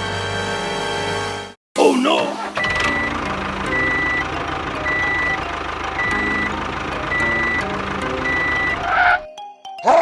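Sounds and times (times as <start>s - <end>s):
truck engine running: 1.8s - 9.3s
reversing alarm beeping: 2.4s - 9.3s.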